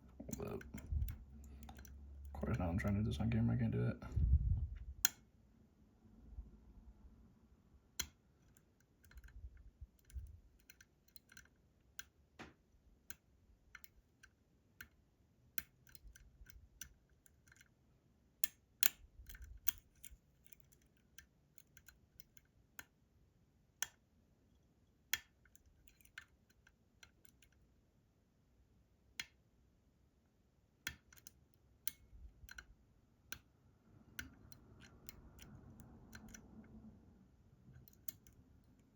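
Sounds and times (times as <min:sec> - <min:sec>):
lock pick metallic clicks: 0:00.2 - 0:02.9, 0:08.0 - 0:12.2, 0:13.0 - 0:15.0, 0:15.6 - 0:17.8, 0:18.4 - 0:23.0, 0:25.1 - 0:27.6, 0:30.8 - 0:32.7, 0:34.1 - 0:36.8, 0:37.7 - 0:38.9.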